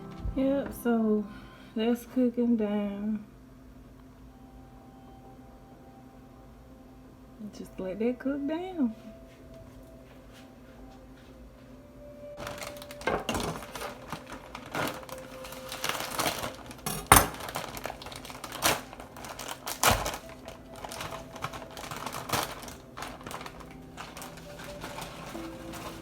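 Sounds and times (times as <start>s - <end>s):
cookware clattering: 16.3s - 17.9s.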